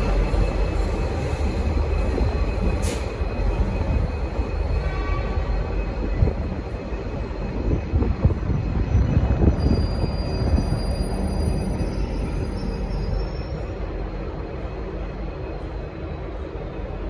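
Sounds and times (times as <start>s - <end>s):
train rumbling over rails: 0.0s - 17.0s
high wheel squeal: 9.4s - 13.6s.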